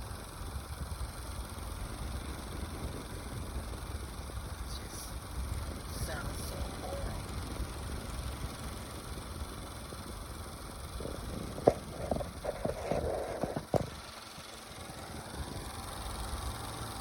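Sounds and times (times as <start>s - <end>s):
desk fan humming: 0.0s - 17.0s
fan clacking and knocking: 11.0s - 14.4s.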